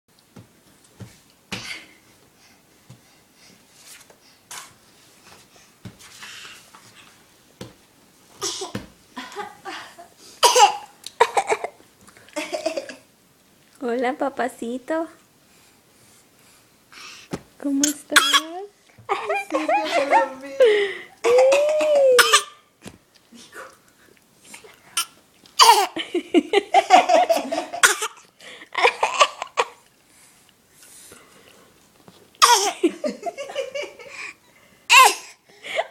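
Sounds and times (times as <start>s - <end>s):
baby coughing: 8.4s - 8.8s, 10.4s - 11.8s, 17.8s - 18.6s, 21.3s - 22.6s, 25.0s - 26.0s, 27.8s - 28.2s, 32.4s - 32.8s, 34.9s - 35.4s
baby laughing: 18.2s - 20.4s, 21.2s - 22.6s, 25.6s - 26.0s, 32.4s - 33.0s.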